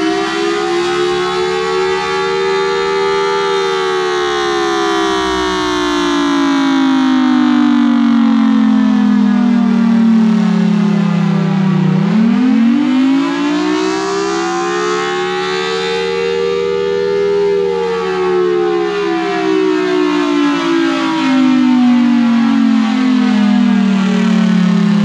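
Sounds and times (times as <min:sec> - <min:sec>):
warning siren wailing: 0:00.0 - 0:25.0.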